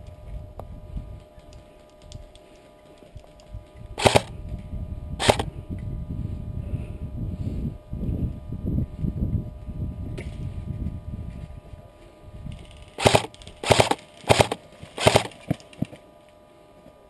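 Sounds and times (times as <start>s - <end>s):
low rumbling handling noise: 0.0s - 17.0s
airsoft rifle bursts: 4.0s - 4.3s, 5.2s - 5.5s, 12.9s - 15.6s.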